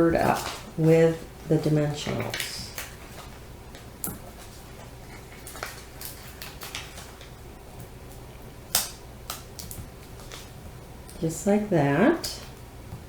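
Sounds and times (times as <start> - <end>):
paper crafting clicks and rustles: 5.3 - 7.4.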